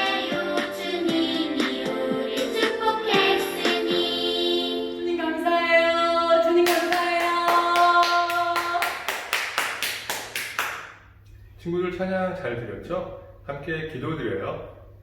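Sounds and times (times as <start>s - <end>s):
steady clapping beat: 0.0s - 4.0s, 6.6s - 11.2s
children singing: 0.0s - 5.5s.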